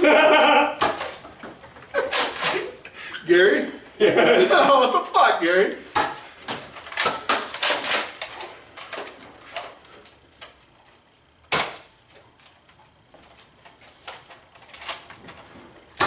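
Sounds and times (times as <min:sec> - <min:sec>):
darts striking: 0:00.8 - 0:01.2, 0:05.9 - 0:08.1, 0:11.5 - 0:11.9
foam dart blasters clacking: 0:00.8 - 0:01.2.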